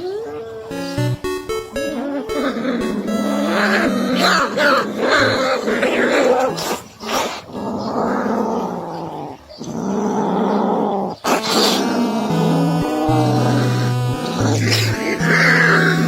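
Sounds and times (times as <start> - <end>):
dog growling: 0.0 - 0.9, 1.9 - 16.0
background music: 0.4 - 6.0, 11.4 - 16.0.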